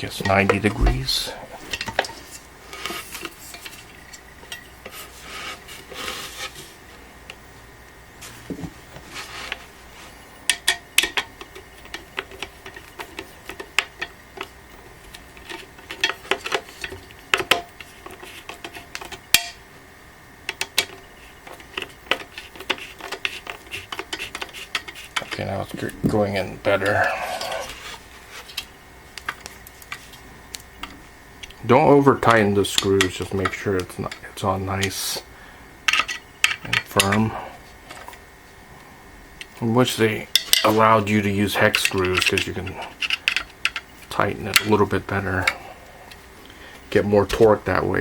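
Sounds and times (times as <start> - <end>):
screwdriver scraping on metal: 21.5 - 25.9.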